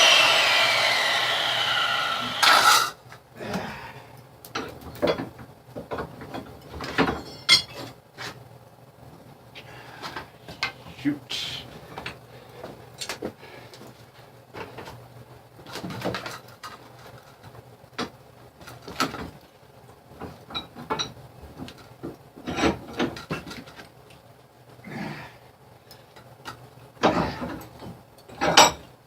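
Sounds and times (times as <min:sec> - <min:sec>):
metal tools knocking and clattering: 0:04.6 - 0:08.0.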